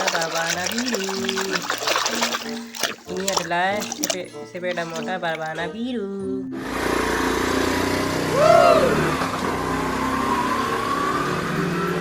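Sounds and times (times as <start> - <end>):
motorcycle engine revving: 6.5 - 12.0.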